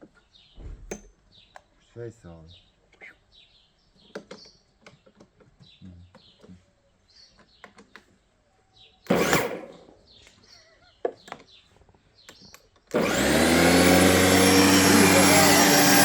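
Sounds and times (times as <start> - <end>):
electric lawn mower spinning up: 9.1 - 9.9, 12.9 - 16.0
faint bird chirps: 10.1 - 12.7.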